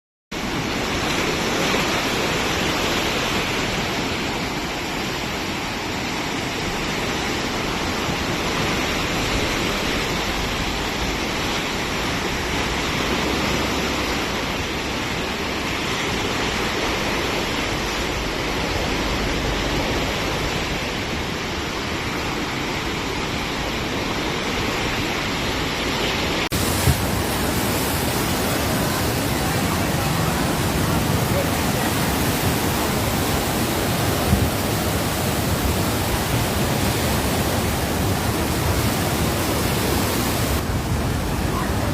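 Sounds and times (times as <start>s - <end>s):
floodwater rushing: 0.4s - 41.9s.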